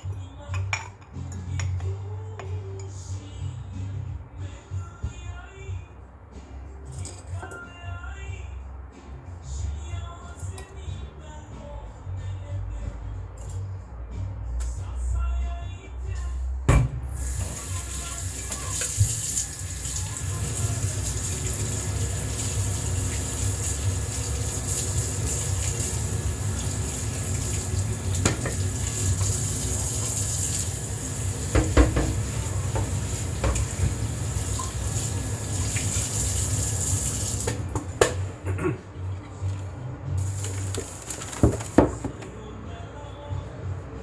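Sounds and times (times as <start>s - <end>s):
tap running into sink: 16.7s - 38.2s, 40.2s - 42.3s
dishes knocking and clinking: 28.1s - 29.4s, 31.5s - 34.8s, 37.4s - 38.4s.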